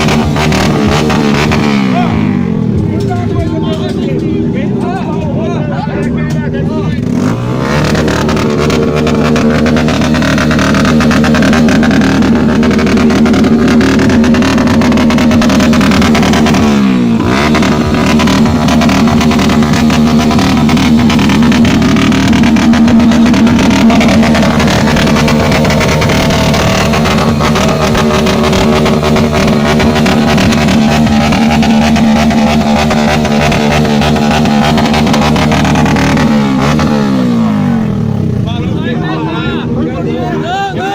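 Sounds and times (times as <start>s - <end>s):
motorcycle engine at high revs: 0.0s - 40.9s.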